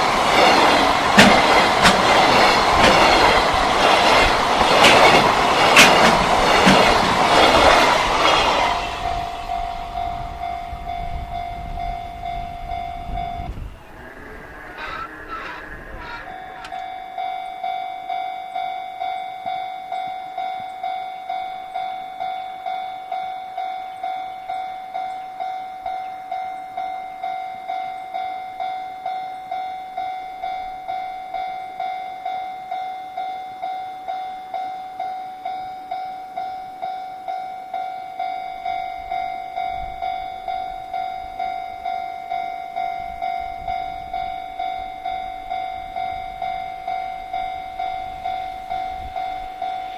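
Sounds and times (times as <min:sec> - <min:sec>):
level crossing warning bell: 0:00.0 - 0:49.9
low rumble: 0:07.9 - 0:16.9.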